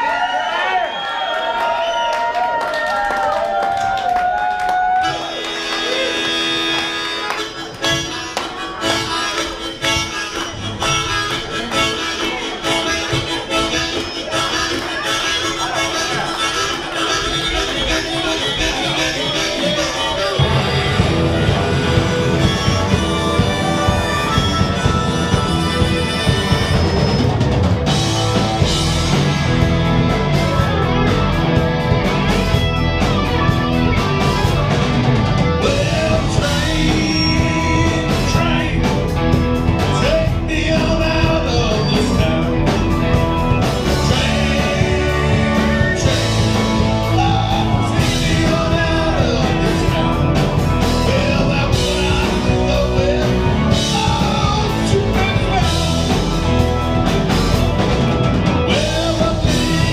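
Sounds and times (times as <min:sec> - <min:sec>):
drums: 0:00.0 - 0:59.9
rock guitar: 0:03.8 - 0:59.9
person singing: 0:07.8 - 0:27.2, 0:35.6 - 0:56.7, 0:58.6 - 0:59.9.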